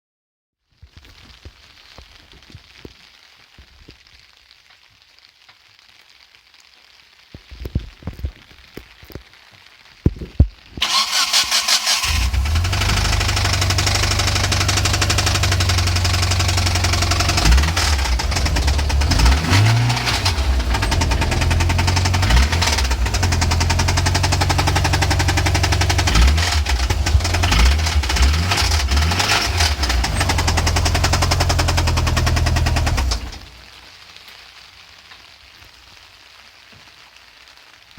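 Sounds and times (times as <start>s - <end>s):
fast even engine knocking: 10.8s - 33.4s
car engine cranking and running: 10.8s - 33.5s.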